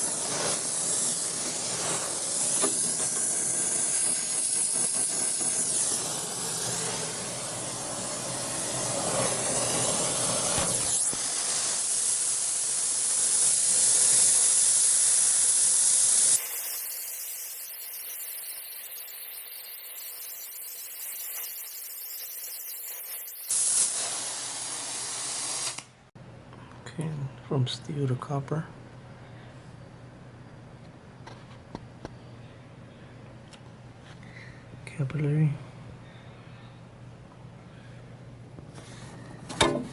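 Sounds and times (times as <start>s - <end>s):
brazing torch flame hissing: 0.0s - 26.1s.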